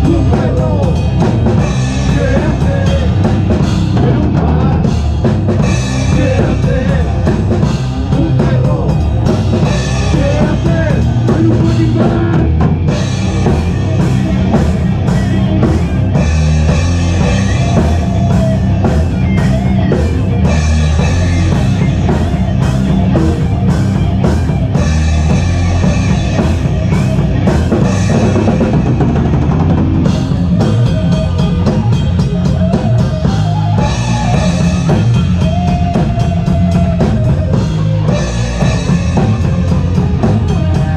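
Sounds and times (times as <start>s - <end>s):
heavy bass drum: 0.0s - 40.9s
loud rock band playing: 0.0s - 40.9s.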